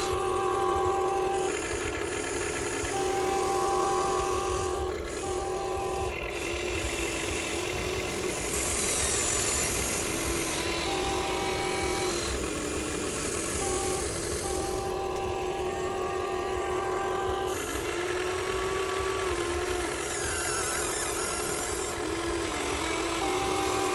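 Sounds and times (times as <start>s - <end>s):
electric gear motors whining: 0.0s - 23.9s.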